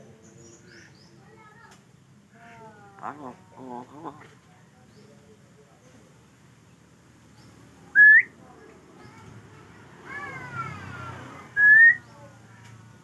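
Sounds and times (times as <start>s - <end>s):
bird whistling: 8.0s - 8.3s, 11.6s - 12.1s.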